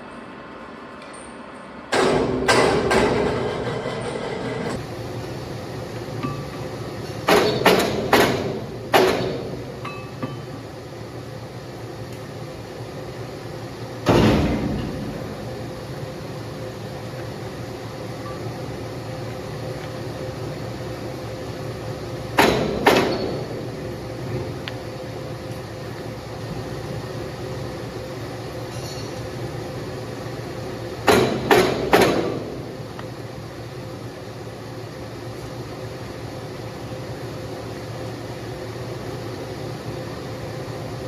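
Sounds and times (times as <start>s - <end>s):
steady machine hum: 0.0s - 41.0s
ringing metal clanks: 28.7s - 29.2s.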